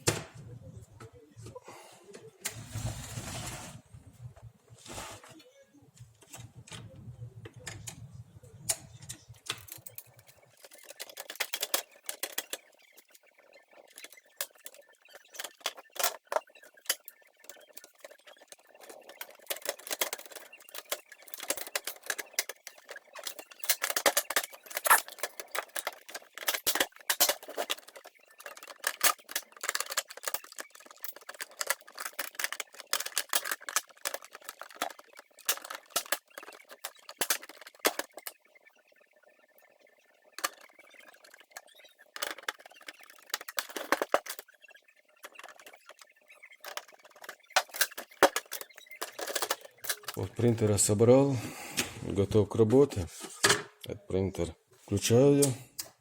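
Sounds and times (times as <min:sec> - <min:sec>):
plastic clicks and rattles: 0:06.2 - 0:38.7, 0:40.3 - 0:50.8.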